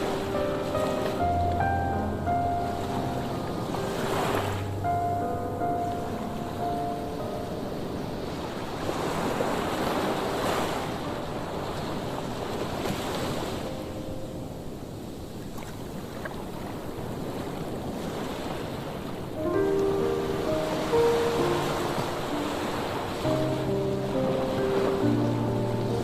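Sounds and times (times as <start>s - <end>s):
waves breaking on stony shore: 3.6s - 4.6s, 7.8s - 13.7s, 15.4s - 26.0s.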